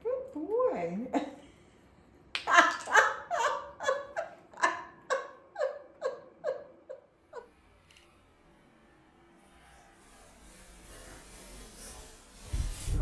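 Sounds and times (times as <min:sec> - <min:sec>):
woman laughing: 0:02.4 - 0:07.5.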